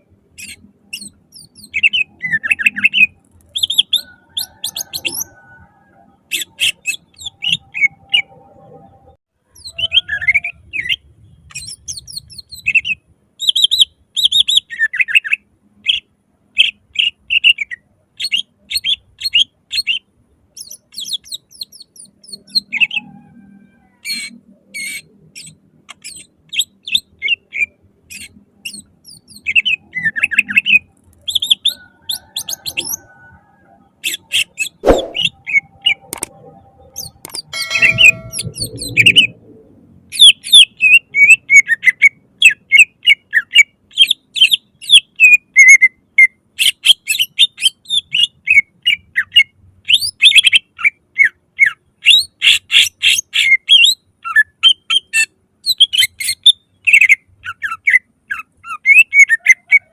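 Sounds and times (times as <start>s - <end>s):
bird singing in quick chirps: 0.4s - 5.6s, 6.3s - 8.4s, 9.5s - 23.1s, 24.0s - 33.1s, 34.0s - 36.2s.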